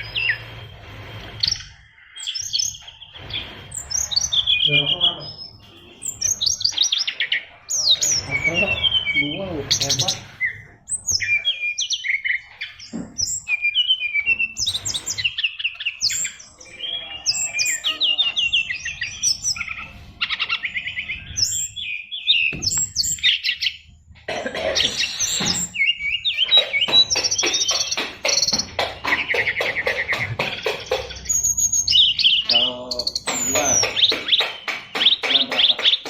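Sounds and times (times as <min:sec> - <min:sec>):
songbird singing: 0:00.0 - 0:36.0
rapid rattling trills: 0:24.3 - 0:36.0.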